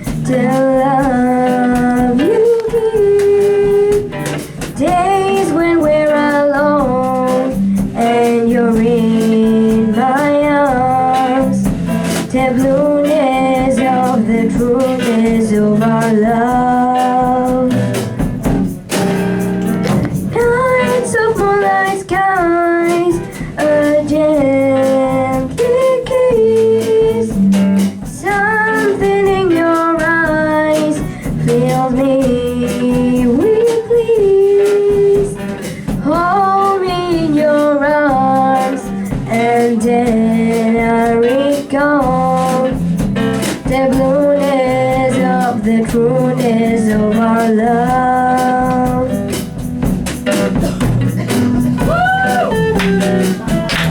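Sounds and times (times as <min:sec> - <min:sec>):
woman singing: 0:00.0 - 0:18.3, 0:20.2 - 0:49.7, 0:50.5 - 0:53.9
plucked guitar chords: 0:00.0 - 0:36.2, 0:36.8 - 0:53.9.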